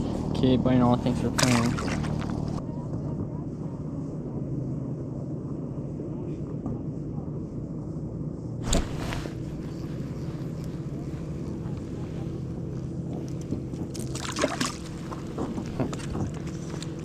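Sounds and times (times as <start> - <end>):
engine running steadily: 0.0 - 17.0
handling rustle: 8.6 - 12.3.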